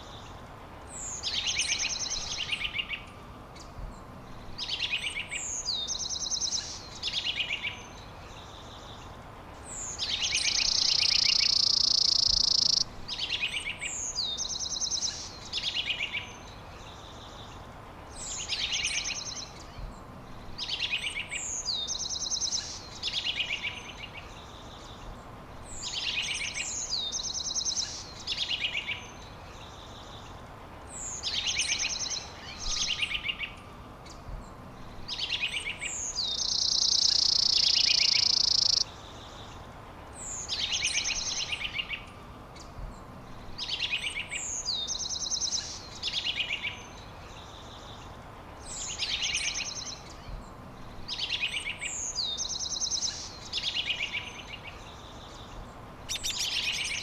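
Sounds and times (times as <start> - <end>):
loud steady buzzing hiss: 0.0 - 57.0
songbird singing: 0.0 - 57.0.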